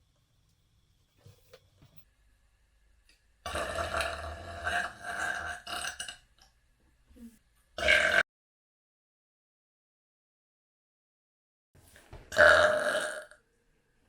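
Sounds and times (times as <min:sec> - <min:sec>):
person burping: 0:03.5 - 0:06.2, 0:07.8 - 0:08.3, 0:12.3 - 0:13.4.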